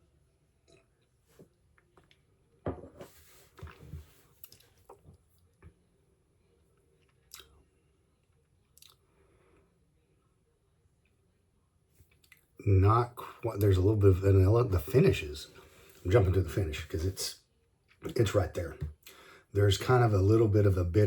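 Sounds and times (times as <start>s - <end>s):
lip and tongue smacks: 7.0s - 7.6s, 8.8s - 9.0s.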